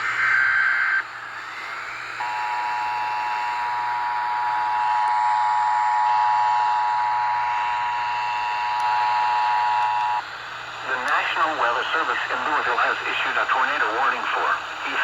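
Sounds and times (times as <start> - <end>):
steady warning alarm tone: 2.2 - 10.2
radio hiss: 10.7 - 15.0.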